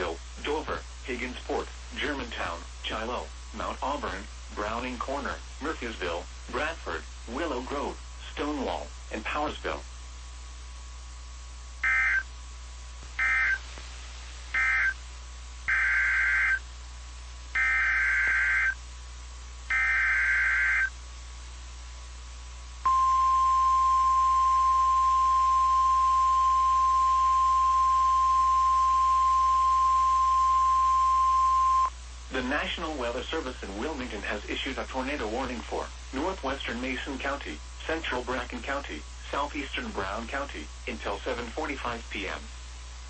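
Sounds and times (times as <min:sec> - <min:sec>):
warbling two-tone data bursts: 0:11.8 - 0:12.2, 0:13.2 - 0:13.6, 0:14.6 - 0:15.0, 0:15.7 - 0:16.6, 0:17.6 - 0:18.8, 0:19.7 - 0:20.9
steady high alarm tone: 0:11.8 - 0:12.3, 0:13.2 - 0:13.6, 0:14.6 - 0:15.0, 0:15.7 - 0:16.6, 0:17.6 - 0:18.8, 0:19.7 - 0:20.9, 0:22.8 - 0:31.9.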